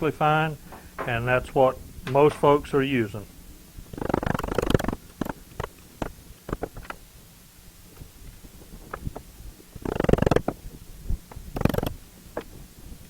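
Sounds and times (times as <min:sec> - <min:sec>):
metal scraping rattles: 0:03.8 - 0:07.1, 0:07.9 - 0:12.7
metal parts clicking and knocking: 0:11.3 - 0:12.0.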